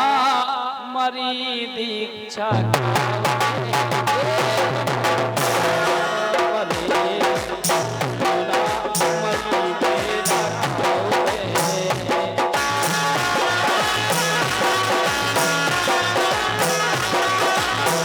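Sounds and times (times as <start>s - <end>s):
drums beating: 2.5s - 18.0s
folk music instrumental: 5.5s - 18.0s.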